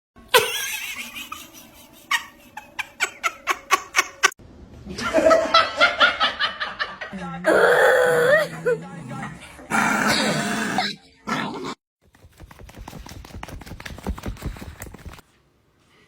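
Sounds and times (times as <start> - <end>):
people laughing: 0.4 - 7.2.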